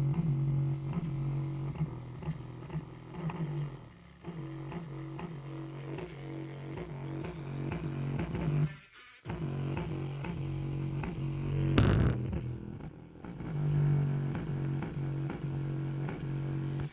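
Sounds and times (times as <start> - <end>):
bass-heavy music through speaker: 11.6 - 16.7.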